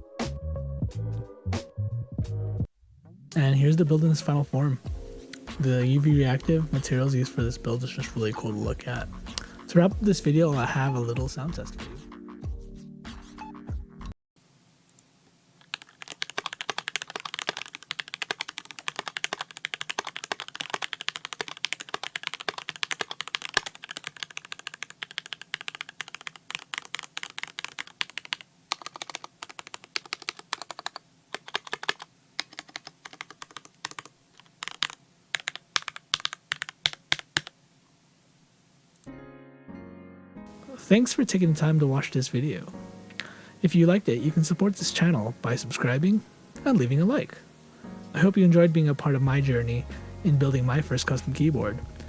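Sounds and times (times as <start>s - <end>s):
typing on mechanical keyboard: 15.6s - 37.5s.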